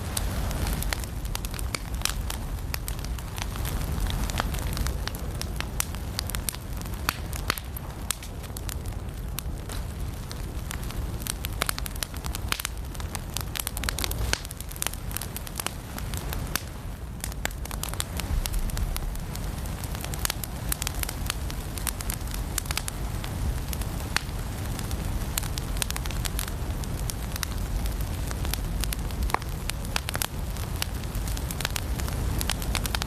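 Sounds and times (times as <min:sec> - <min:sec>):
firewood crackling and popping: 0:00.0 - 0:33.0
low fire rumble: 0:00.0 - 0:33.0.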